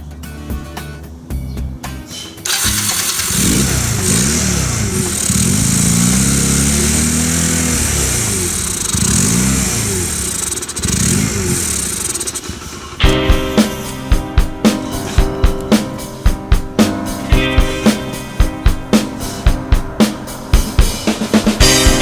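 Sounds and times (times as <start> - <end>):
motorcycle engine revving: 2.4 - 22.0
music with strong beat: 12.6 - 22.0.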